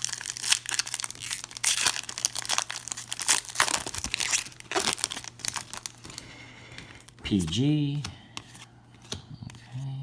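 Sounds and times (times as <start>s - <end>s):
plastic wrapper crinkling: 0.0s - 7.2s.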